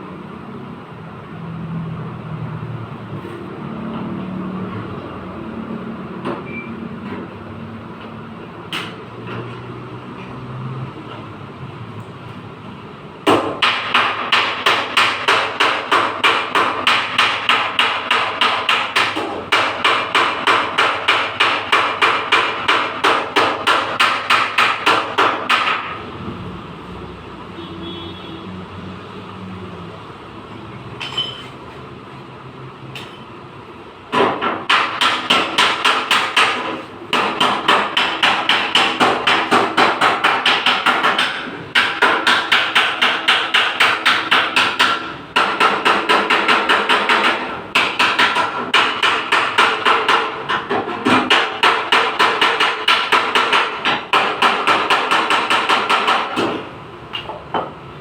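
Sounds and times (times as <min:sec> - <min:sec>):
hammer beating sheet metal: 0:13.2 - 0:26.1, 0:34.1 - 0:56.7.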